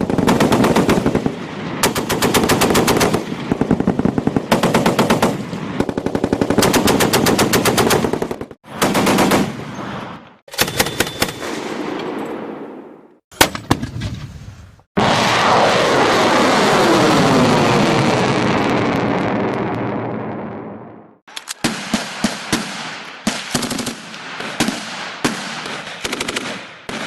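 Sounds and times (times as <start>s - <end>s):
automatic machine-gun fire: 0.0s - 9.6s, 26.0s - 27.0s.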